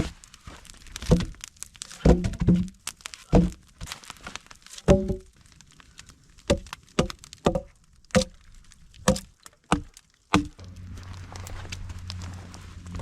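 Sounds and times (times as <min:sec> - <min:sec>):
axe chopping wood: 0:06.5 - 0:08.3, 0:09.0 - 0:10.7
steady low rumble: 0:10.5 - 0:13.0.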